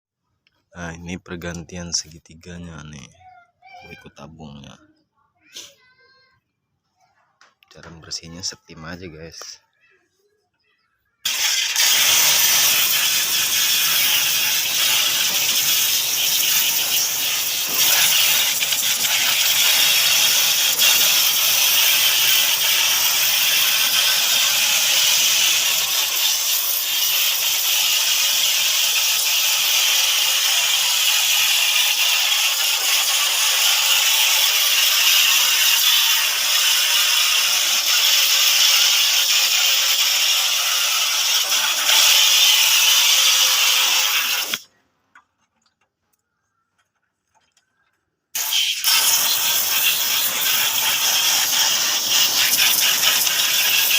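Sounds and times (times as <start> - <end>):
pressure washer spraying water: 11.3 - 44.6, 48.4 - 53.9.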